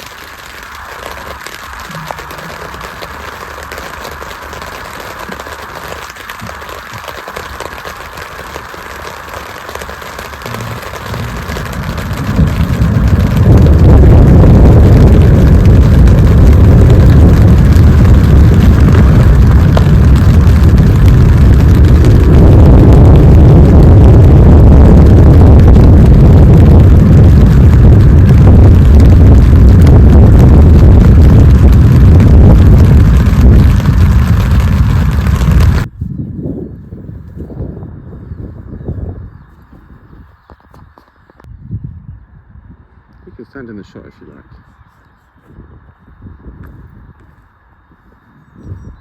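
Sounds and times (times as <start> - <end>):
rain: 0.0 - 35.9
wind: 0.0 - 49.0.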